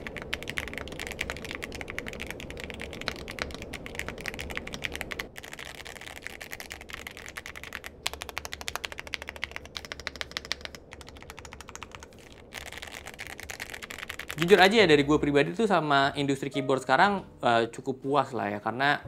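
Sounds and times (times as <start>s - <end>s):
rapid mechanical keyboard typing: 0.0s - 14.9s.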